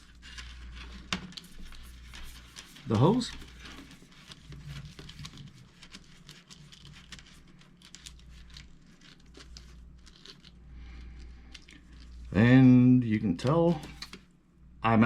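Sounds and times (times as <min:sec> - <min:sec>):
steel cable scraping through hose: 0:00.0 - 0:10.6.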